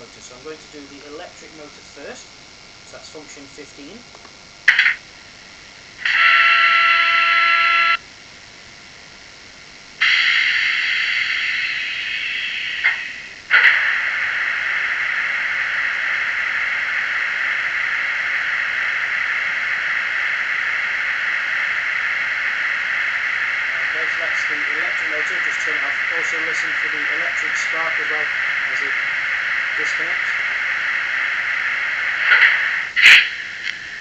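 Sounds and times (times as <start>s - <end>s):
horn-like tone: 6.0s - 8.0s.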